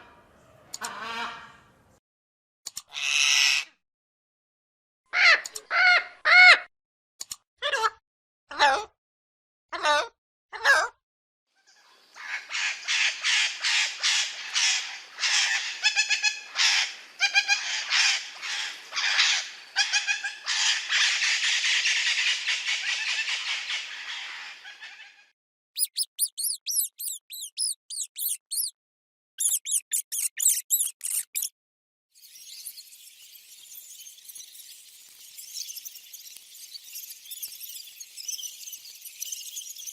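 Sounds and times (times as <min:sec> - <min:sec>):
high-pitched chirps: 0:25.8 - 0:28.7, 0:29.4 - 0:31.5, 0:32.2 - 0:39.9
parrots squawking: 0:25.8 - 0:28.7, 0:29.4 - 0:31.5.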